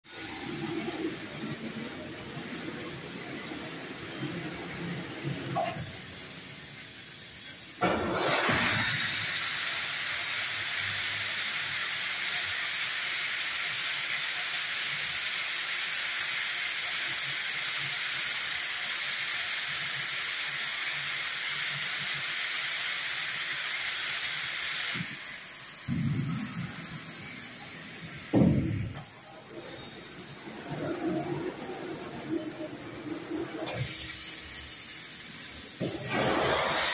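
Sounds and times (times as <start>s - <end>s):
steam press hissing: 2.8s - 36.9s
low thump: 28.3s - 28.9s.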